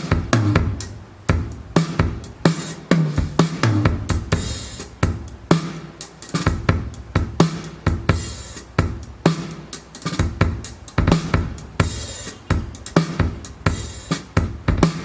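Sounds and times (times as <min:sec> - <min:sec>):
kick drum thumps: 0:00.0 - 0:05.7, 0:06.4 - 0:09.4, 0:10.2 - 0:15.0
cymbals ringing: 0:11.1 - 0:14.3.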